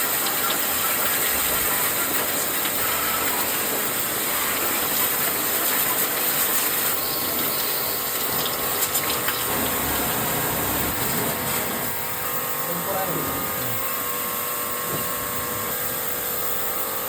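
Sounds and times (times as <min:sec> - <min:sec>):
sprayer pump motor rattling: 0:00.0 - 0:17.0
water spray hissing: 0:04.8 - 0:14.0.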